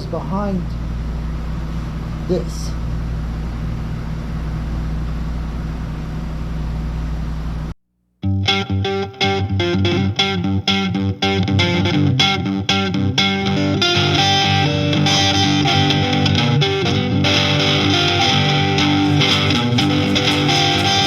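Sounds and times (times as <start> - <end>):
rock music: 19.0 - 21.0.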